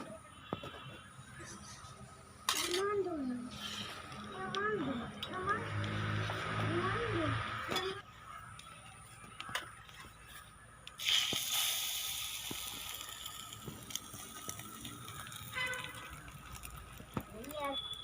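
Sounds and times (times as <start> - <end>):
omelette sizzling in oil: 11.0 - 18.0.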